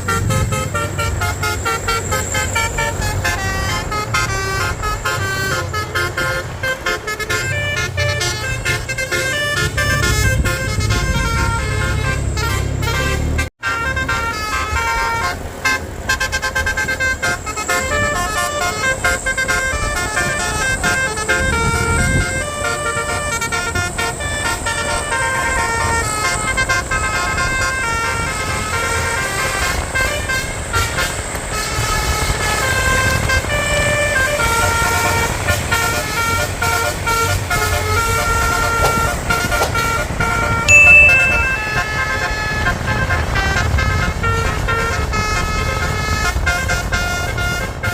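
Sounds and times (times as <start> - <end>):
bus horns playing tunes: 0.0 - 47.9
buses rumbling on road: 0.0 - 47.9
loud high tone: 40.7 - 42.2.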